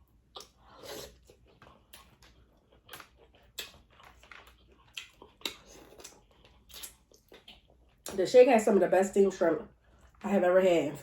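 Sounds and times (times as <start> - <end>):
person chewing food: 0.0 - 8.2.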